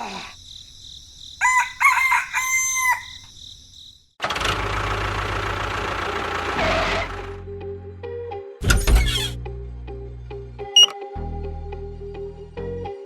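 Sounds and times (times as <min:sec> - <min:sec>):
rooster crowing: 0:01.4 - 0:03.3.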